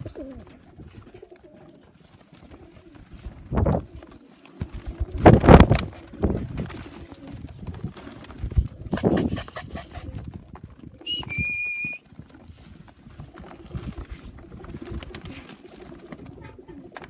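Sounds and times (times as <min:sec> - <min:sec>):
pigeons cooing: 0:00.0 - 0:17.0
wings flapping: 0:00.0 - 0:17.0
high whistled tone: 0:11.1 - 0:12.0.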